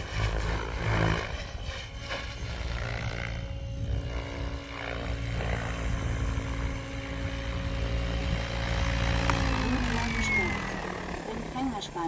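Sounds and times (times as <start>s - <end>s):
rc helicopter rotor whine: 0.0s - 12.0s.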